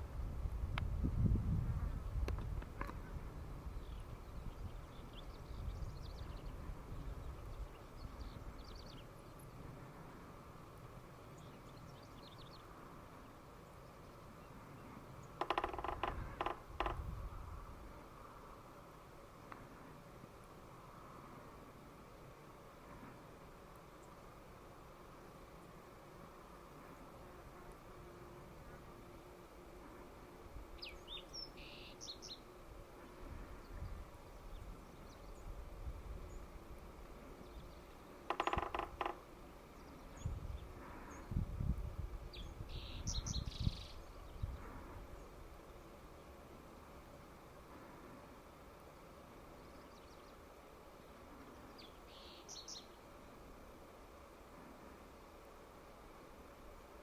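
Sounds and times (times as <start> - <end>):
woodpecker drumming on wood: 15.3 - 17.2, 38.2 - 39.3.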